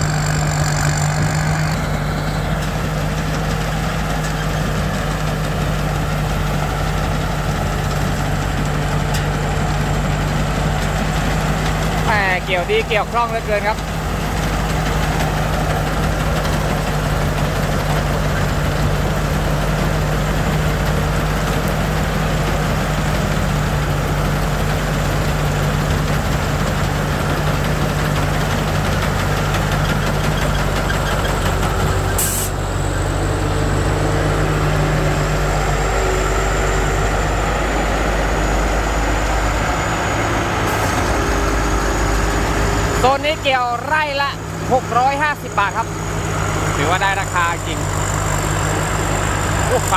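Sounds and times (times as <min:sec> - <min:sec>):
combine harvester droning: 0:00.0 - 0:49.9.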